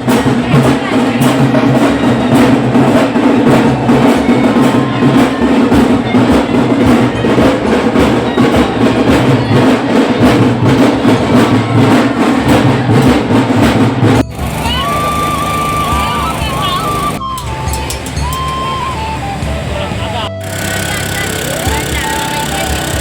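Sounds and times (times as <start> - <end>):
loud music with fast drumming: 0.0 - 17.2, 20.1 - 23.0
steady high tone: 14.2 - 23.0.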